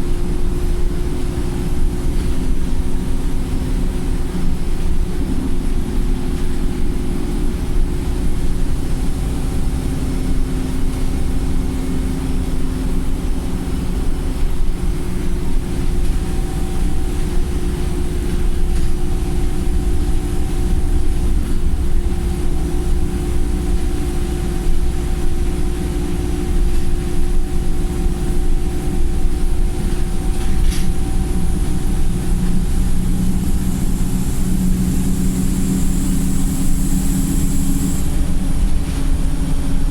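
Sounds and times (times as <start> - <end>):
bus engine drone: 0.0 - 39.9
low road rumble: 0.0 - 39.9
hiss: 33.4 - 39.7.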